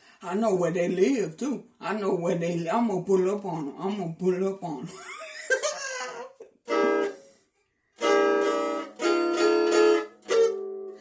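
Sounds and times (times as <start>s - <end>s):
guitar chords: 6.6s - 7.4s, 8.0s - 11.0s.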